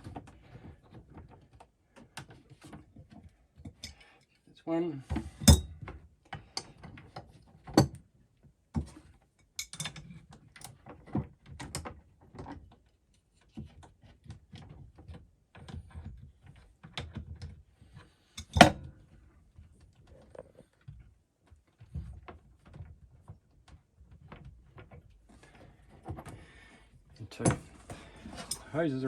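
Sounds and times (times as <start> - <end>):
spanners clinking on metal fittings: 27.4 - 28.8.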